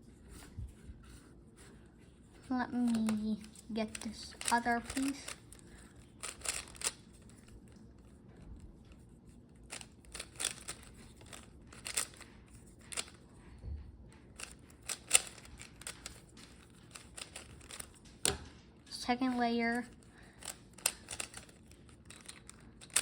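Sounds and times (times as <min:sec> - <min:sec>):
puzzle cube turning clicks: 0:02.7 - 0:07.8, 0:09.6 - 0:13.3, 0:14.2 - 0:18.6, 0:19.7 - 0:23.0.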